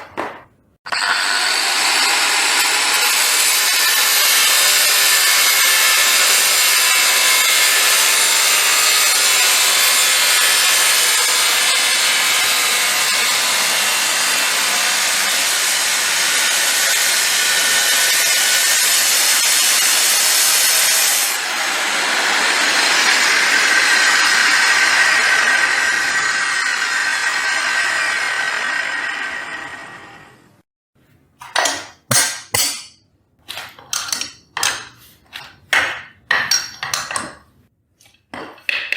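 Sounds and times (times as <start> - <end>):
angle grinder grinding: 0.0 - 30.4.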